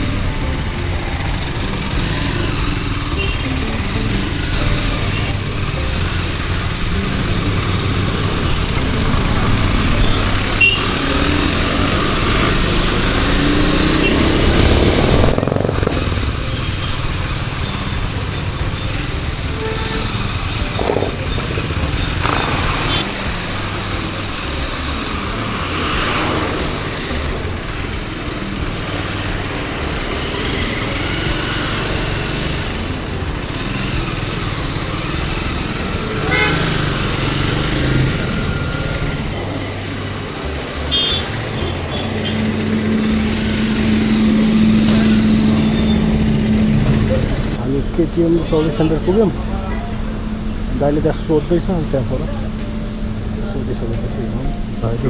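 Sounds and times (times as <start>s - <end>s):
motorcycle engine running: 0.0s - 55.0s
wind and road noise: 0.0s - 55.0s.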